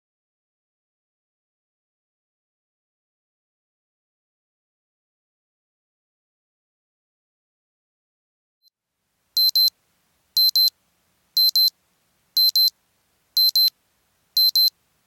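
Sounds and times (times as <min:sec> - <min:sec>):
alarm clock double beeps: 0:09.4 - 0:09.7, 0:10.4 - 0:10.7, 0:11.4 - 0:11.7, 0:12.4 - 0:12.7, 0:13.4 - 0:13.7, 0:14.4 - 0:14.7.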